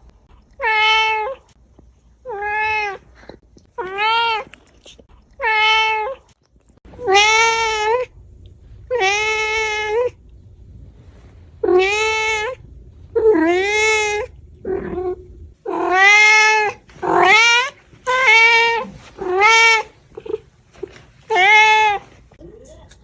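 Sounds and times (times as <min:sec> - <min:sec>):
cat meowing: 0:05.4 - 0:06.2, 0:07.0 - 0:08.1, 0:08.9 - 0:10.2, 0:11.6 - 0:12.6, 0:13.2 - 0:20.4, 0:21.3 - 0:22.0.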